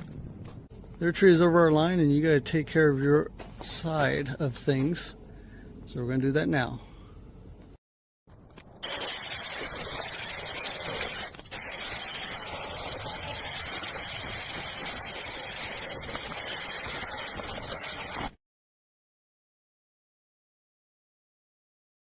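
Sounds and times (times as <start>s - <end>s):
mini chainsaw cutting branches: 8.8s - 18.4s.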